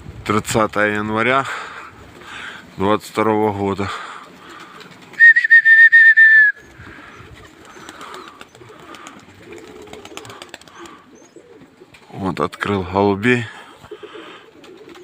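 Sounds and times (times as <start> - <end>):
pigeon cooing: 4.0 - 5.6, 6.4 - 12.2, 13.6 - 15.0
loud warbling whistle: 5.2 - 6.6.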